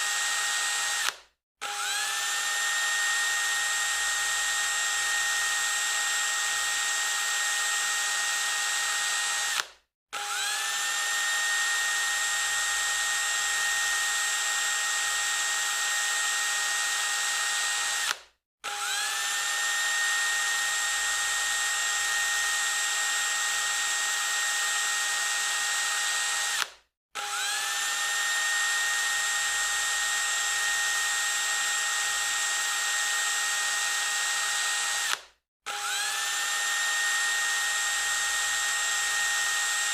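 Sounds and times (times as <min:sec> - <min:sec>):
electric drill whining: 0:00.0 - 0:39.9.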